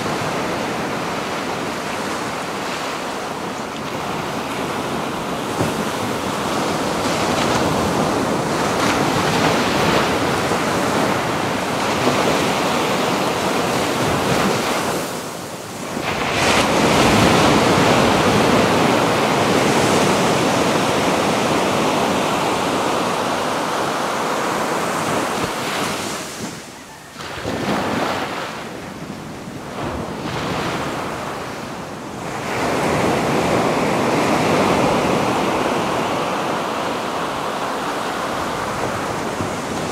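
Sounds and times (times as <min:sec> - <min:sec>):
ocean surf breaking on beach: 0:00.0 - 0:39.9.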